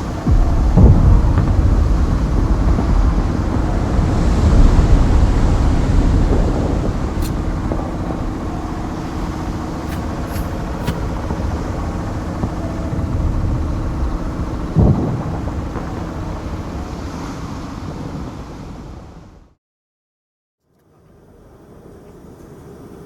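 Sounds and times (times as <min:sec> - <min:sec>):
steady low rumble: 0:00.0 - 0:19.4
heavy thump: 0:07.2 - 0:11.5.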